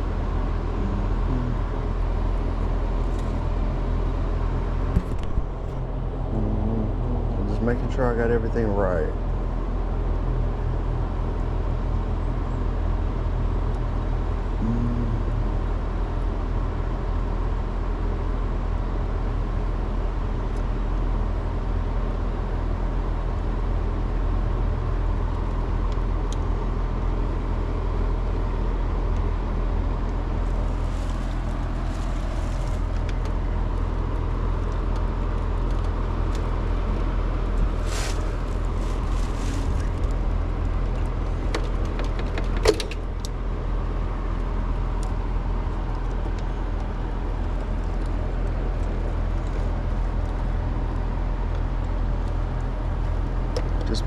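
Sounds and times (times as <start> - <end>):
low mechanical hum: 0.0 - 54.0.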